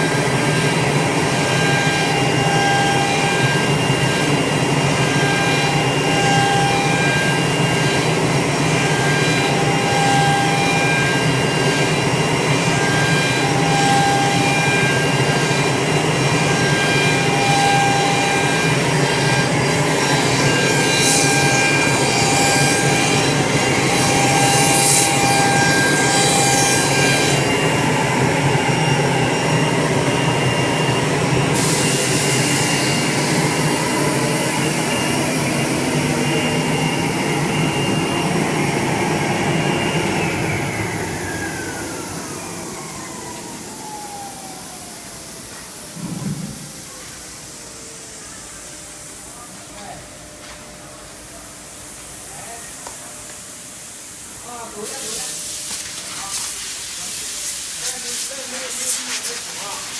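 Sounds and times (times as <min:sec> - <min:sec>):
router spindle cutting wood: 0:00.0 - 0:29.5.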